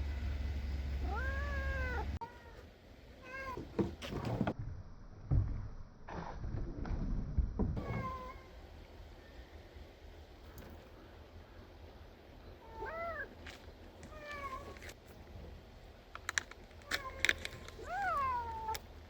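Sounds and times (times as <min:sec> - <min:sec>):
cat meowing: 0:01.0 - 0:02.6, 0:16.9 - 0:18.8.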